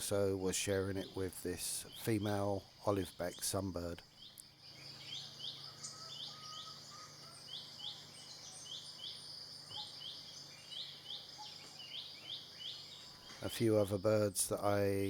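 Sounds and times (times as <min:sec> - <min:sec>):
high insect drone: 0:00.0 - 0:15.0.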